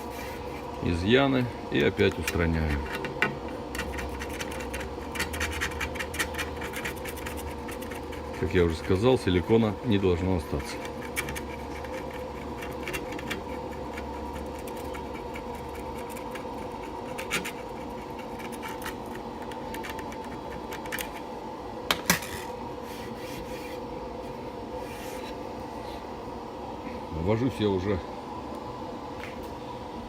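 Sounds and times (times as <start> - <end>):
razor blade scraping glass: 10.7 - 19.2.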